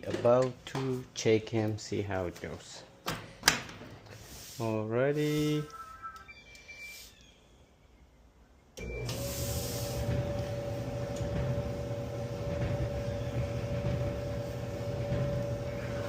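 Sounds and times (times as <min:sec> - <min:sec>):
short beep: 0:05.6 - 0:07.0
dryer motor and drum humming: 0:08.8 - 0:16.0.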